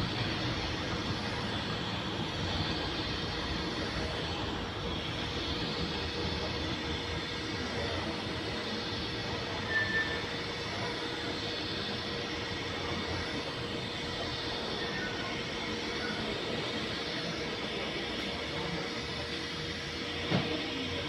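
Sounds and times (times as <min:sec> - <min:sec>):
welding arc hissing: 0:00.0 - 0:21.0.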